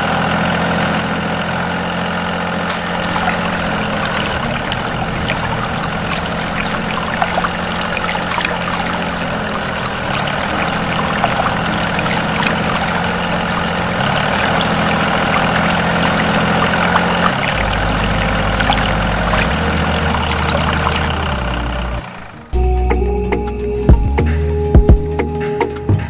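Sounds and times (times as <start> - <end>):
water pouring and splashing: 2.6 - 22.3
small motor humming: 2.7 - 22.6.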